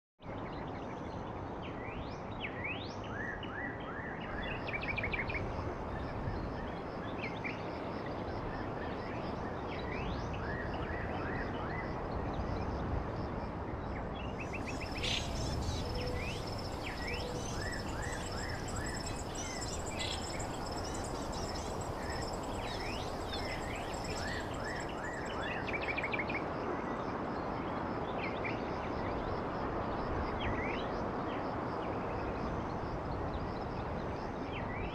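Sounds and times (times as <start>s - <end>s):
steady background noise: 0.3s - 34.9s
small birds chirping: 14.4s - 25.5s.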